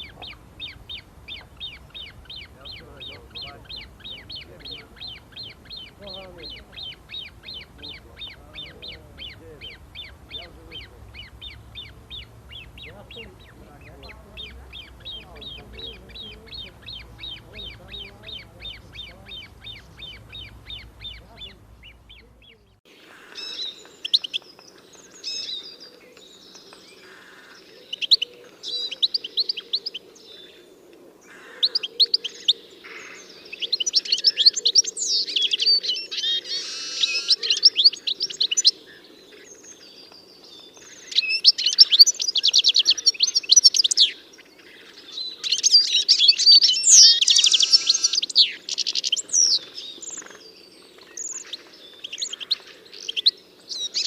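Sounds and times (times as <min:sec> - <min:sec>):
faint low hum: 0:00.0 - 0:22.8
songbirds chirping and trilling: 0:00.0 - 0:54.0.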